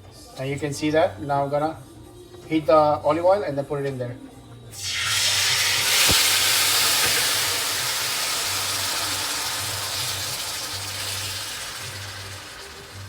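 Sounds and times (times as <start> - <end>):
meat sizzling in a pan: 4.8 - 13.0.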